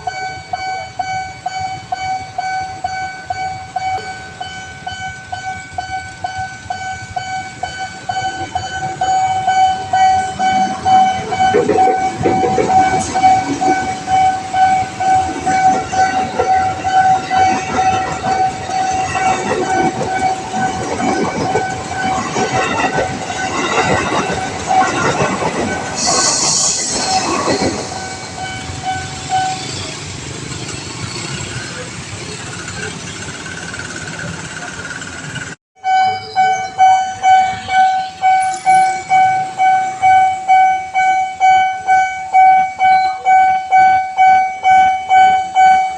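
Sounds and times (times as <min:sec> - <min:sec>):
level crossing alarm tone: 0:00.0 - 0:30.2, 0:35.8 - 0:45.9
train wheels clattering on rails: 0:01.7 - 0:35.6
hiss: 0:26.0 - 0:28.1.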